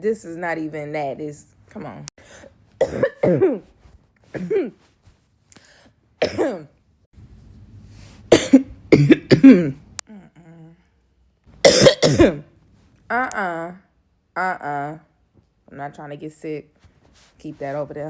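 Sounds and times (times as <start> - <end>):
woman coughing: 2.8 - 3.7, 4.3 - 4.8, 6.2 - 6.7, 8.3 - 9.8, 11.6 - 12.5.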